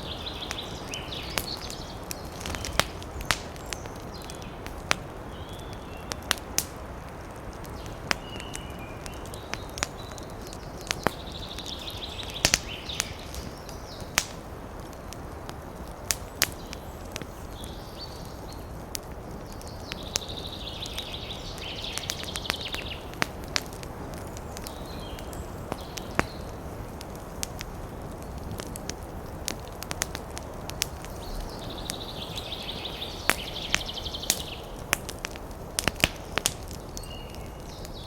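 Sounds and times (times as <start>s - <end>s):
bird chirping: 0.0s - 4.6s, 7.8s - 14.2s, 19.5s - 23.2s, 31.1s - 34.8s, 36.2s - 38.0s
background hiss: 0.0s - 38.0s
sharp clicks and cracks: 1.3s - 5.0s, 5.7s - 17.4s, 27.0s - 32.0s, 33.3s - 37.1s.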